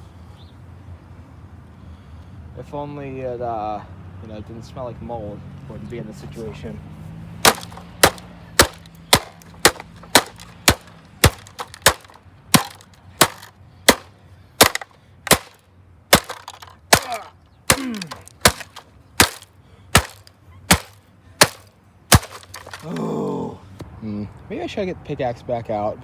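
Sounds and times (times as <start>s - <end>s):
sledgehammer striking plastic: 7.4s - 23.0s.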